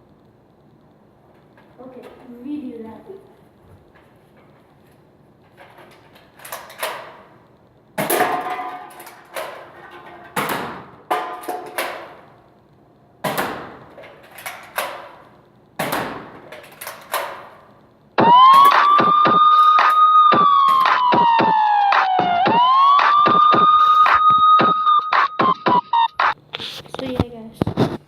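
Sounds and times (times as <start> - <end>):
darts striking drink cans: 10.4 - 12.2, 13.2 - 13.8, 15.8 - 17.5
dart blaster priming and firing: 18.2 - 26.4
siren: 18.2 - 26.4.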